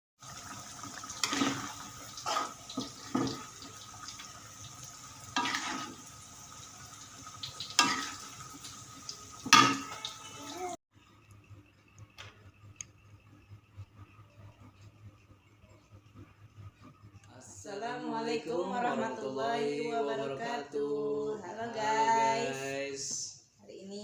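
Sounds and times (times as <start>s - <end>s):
water and dishes clattering: 0.2s - 10.8s.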